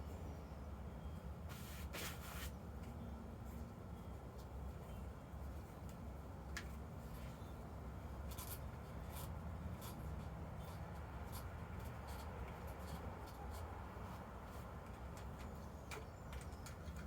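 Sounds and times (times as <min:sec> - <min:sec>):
light clicks and scraping: 0:08.2 - 0:17.0.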